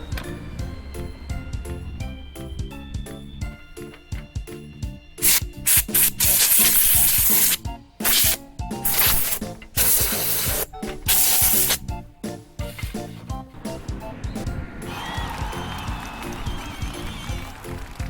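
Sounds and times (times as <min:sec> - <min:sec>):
background music: 0:00.0 - 0:18.0
air blow gun hissing: 0:05.2 - 0:11.9.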